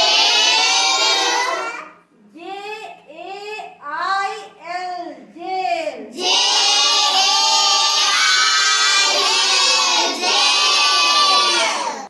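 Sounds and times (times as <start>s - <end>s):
children chanting in unison: 0.0s - 1.9s, 6.1s - 12.0s.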